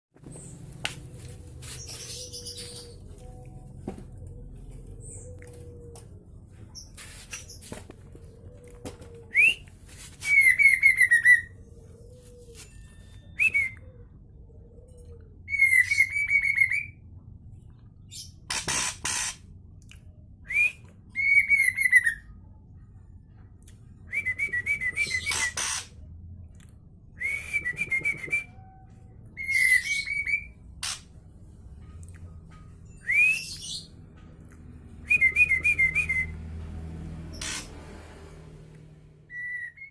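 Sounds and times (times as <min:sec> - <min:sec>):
bird singing whistles and trills: 0:09.3 - 0:14.0, 0:15.5 - 0:17.0, 0:20.4 - 0:22.4, 0:24.0 - 0:25.8, 0:27.1 - 0:30.6, 0:32.8 - 0:33.9, 0:35.0 - 0:36.4, 0:39.3 - 0:39.9
harsh rasping bird note: 0:37.4 - 0:37.8.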